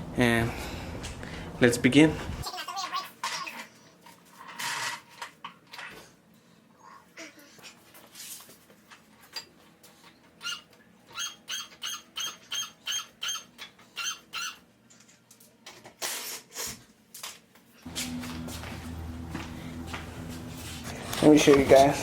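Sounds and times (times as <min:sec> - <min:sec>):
steady hum: 0:17.9 - 0:22.0.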